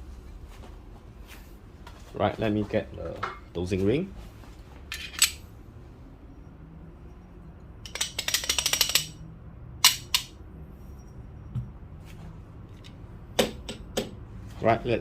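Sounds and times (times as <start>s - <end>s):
small metal clicks and rattles: 7.8s - 9.2s.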